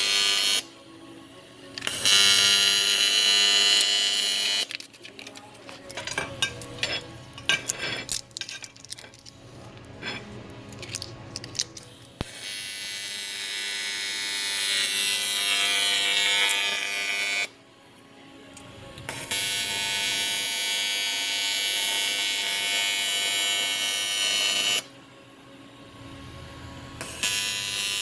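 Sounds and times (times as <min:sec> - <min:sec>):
welder arc buzzing and crackling: 0:00.0 - 0:00.8, 0:01.8 - 0:05.0, 0:10.9 - 0:17.6, 0:18.9 - 0:25.0, 0:27.0 - 0:28.0.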